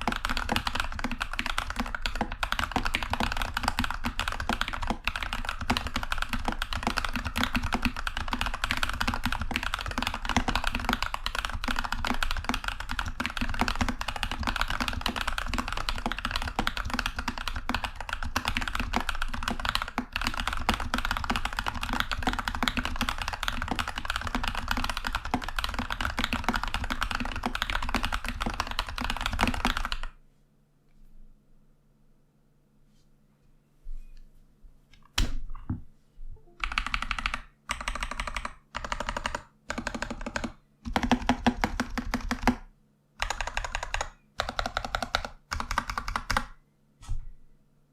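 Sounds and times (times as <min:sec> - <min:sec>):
mechanical keyboard typing: 0:00.0 - 0:30.1, 0:36.6 - 0:46.6.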